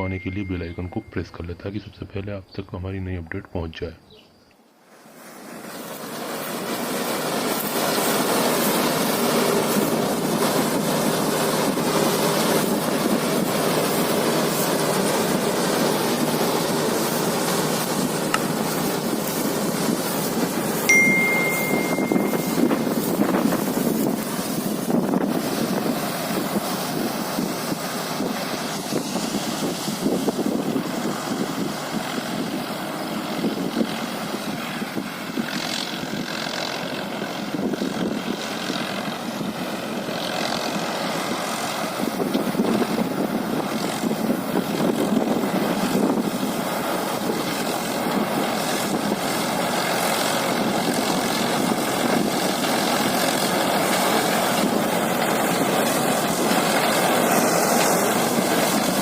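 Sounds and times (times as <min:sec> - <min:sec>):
combine harvester mechanical din: 0:39.0 - 0:59.0.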